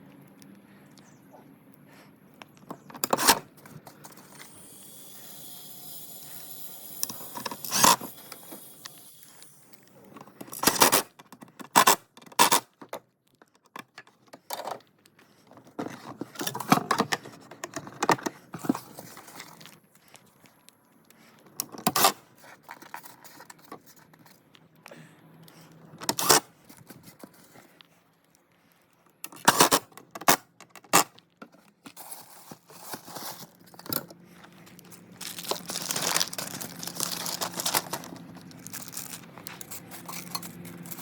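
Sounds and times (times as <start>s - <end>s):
metal parts clinking and scraping: 2.9s - 12.6s, 31.9s - 41.0s
steady whirring: 3.9s - 10.0s.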